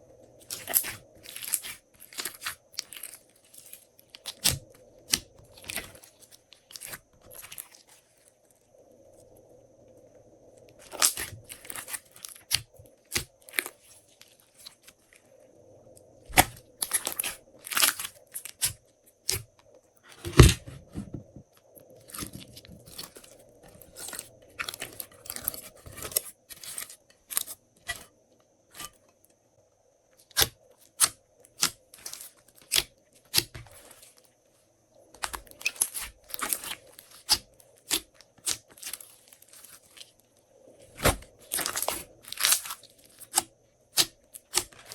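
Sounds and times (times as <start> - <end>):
hands squishing slime: 0.4 - 8.0, 10.8 - 14.9.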